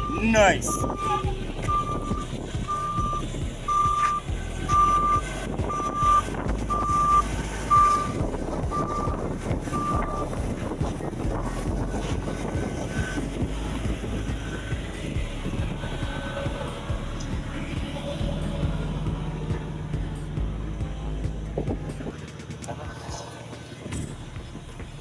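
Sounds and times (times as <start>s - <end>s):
reversing alarm beeping: 0.0s - 10.4s
engine rumble: 0.0s - 25.0s.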